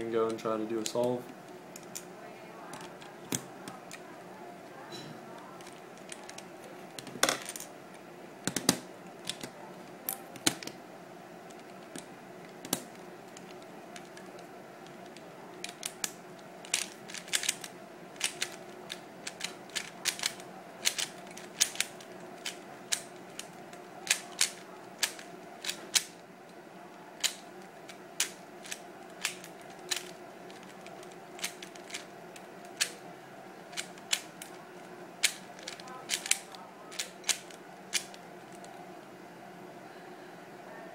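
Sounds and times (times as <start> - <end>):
faint steady hum: 0.0 - 40.9
plastic cube layers clacking: 11.5 - 26.1, 28.2 - 32.1, 35.2 - 38.6.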